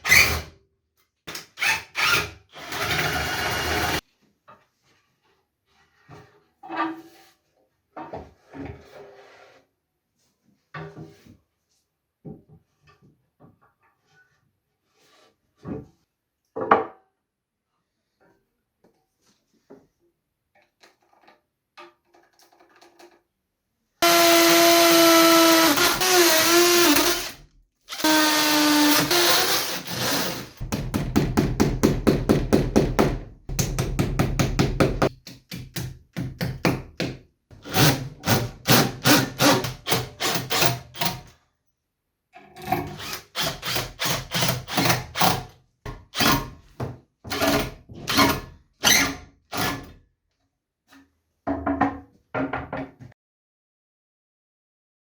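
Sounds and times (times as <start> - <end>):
electric drill whine: 24.0 - 30.5.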